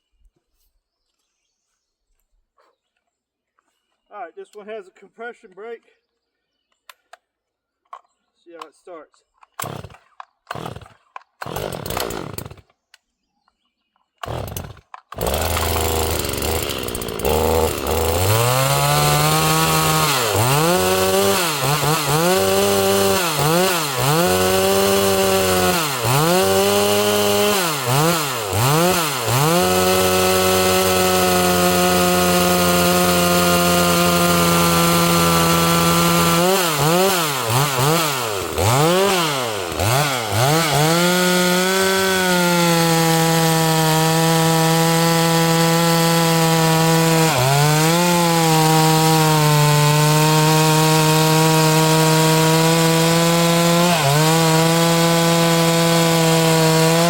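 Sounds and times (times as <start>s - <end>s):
chainsaw idling and revving: 9.5s - 12.8s, 14.2s - 57.0s
starter cord tugs: 14.2s - 47.9s.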